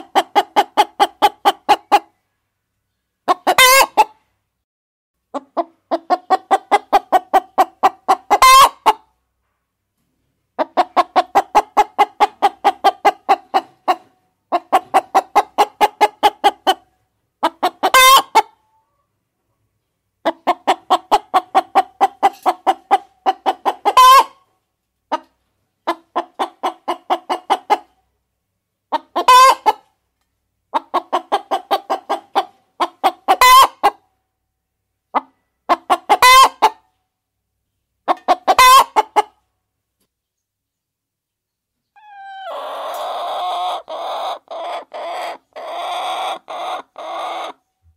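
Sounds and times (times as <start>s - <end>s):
hen cackling: 3.3s - 4.2s, 5.3s - 9.0s, 17.4s - 18.8s, 20.2s - 24.4s, 28.9s - 29.8s, 30.7s - 34.0s, 35.1s - 36.8s, 38.1s - 39.4s, 42.0s - 47.6s.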